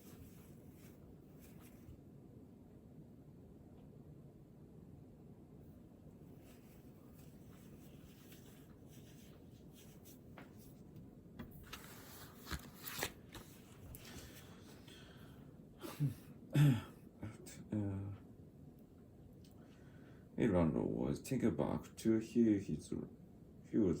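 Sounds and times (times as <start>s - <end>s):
paper rustling: 6.4s - 14.8s
man murmuring: 15.8s - 18.3s.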